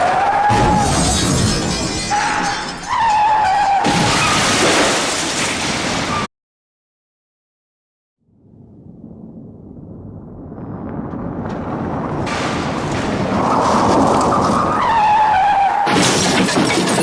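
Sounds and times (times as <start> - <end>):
heavy car crash impact: 0.5 - 3.0, 11.4 - 14.1, 15.8 - 17.0.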